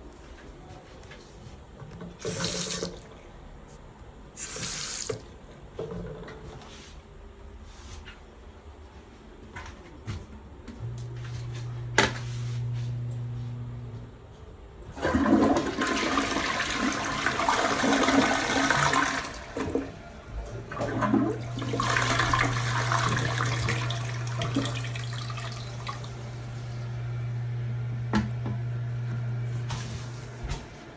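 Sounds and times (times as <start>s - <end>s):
water running as tank refills: 2.2s - 3.1s, 4.4s - 5.3s, 14.9s - 30.6s
toilet flushing: 2.2s - 3.2s, 4.4s - 5.3s, 14.8s - 30.8s
steady low hum: 10.6s - 14.9s.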